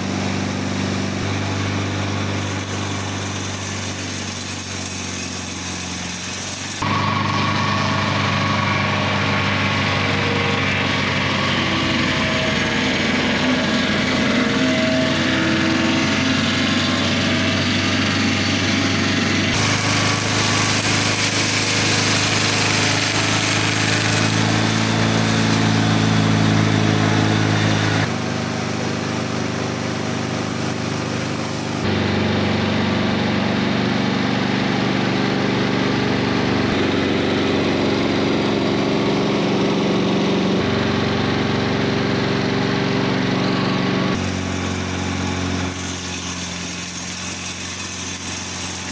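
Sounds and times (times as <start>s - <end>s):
saw blades cutting boards: 0.0s - 32.8s, 34.6s - 48.9s
sawmill gas engine running: 0.0s - 48.9s.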